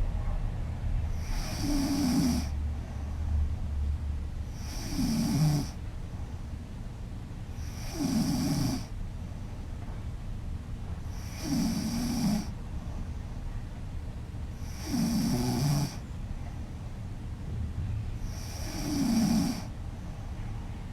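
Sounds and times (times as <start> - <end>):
woman snoring loudly: 1.2 - 2.5, 4.6 - 5.8, 7.6 - 8.9, 11.2 - 12.5, 14.6 - 16.0, 18.4 - 19.7.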